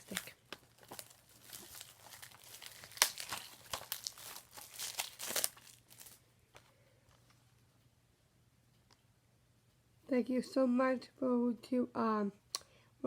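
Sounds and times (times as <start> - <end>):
plastic wrap crinkling: 0.0 - 7.3.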